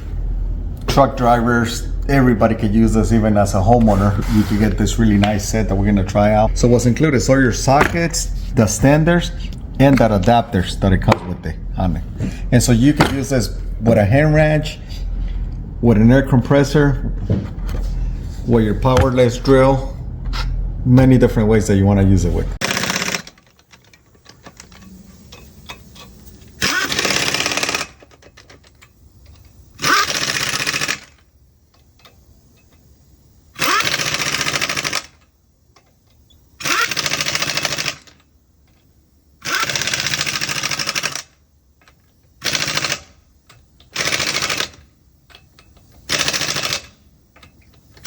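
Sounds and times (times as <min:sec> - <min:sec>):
impact wrench hammering: 0:07.7 - 0:08.4, 0:11.0 - 0:11.4, 0:12.9 - 0:13.4.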